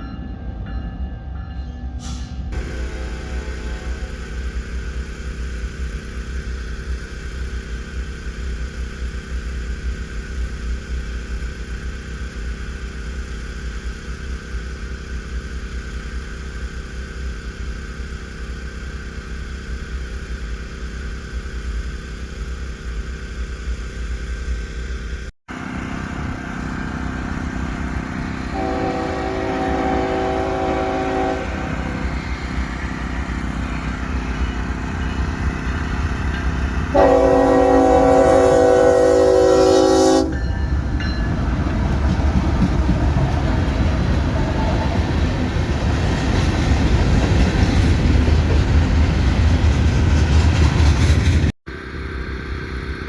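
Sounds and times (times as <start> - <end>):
train horn: 2.0 - 4.7, 28.4 - 33.0, 36.9 - 40.7
engine rumbling: 2.0 - 53.0.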